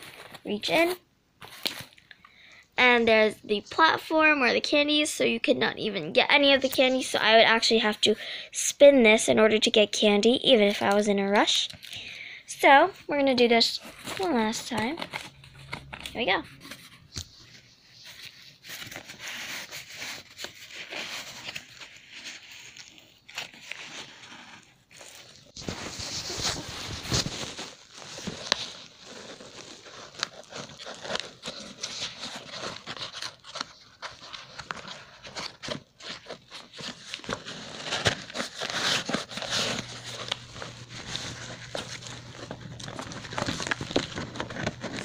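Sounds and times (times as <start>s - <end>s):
paper crinkling and rustling: 13.4s - 45.0s.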